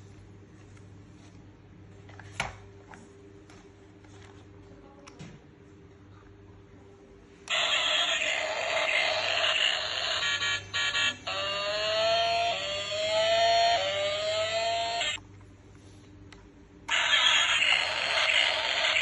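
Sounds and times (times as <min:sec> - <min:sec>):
harsh toy noise: 0:07.5 - 0:15.2, 0:16.9 - 0:19.0
toy siren tones: 0:07.5 - 0:15.2, 0:16.9 - 0:19.0.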